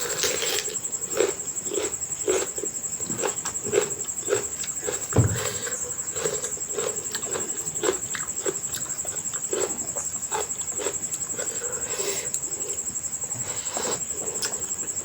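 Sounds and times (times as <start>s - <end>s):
wet chewing and lip smacking: 0.1s - 12.8s, 13.8s - 15.0s
low thump: 5.1s - 5.7s.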